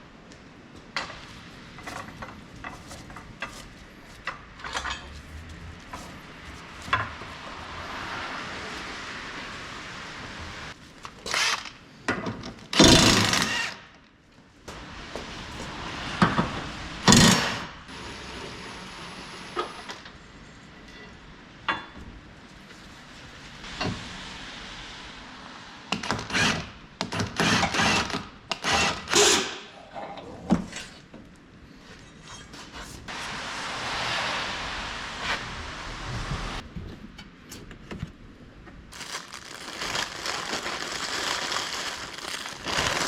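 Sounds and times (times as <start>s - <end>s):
metal tools knocking and clanking: 4.3s - 5.2s.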